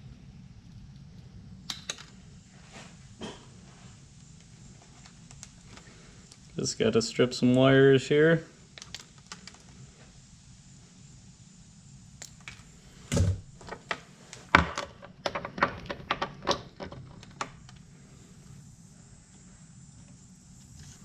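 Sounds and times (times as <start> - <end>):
thump: 13.1 - 13.4.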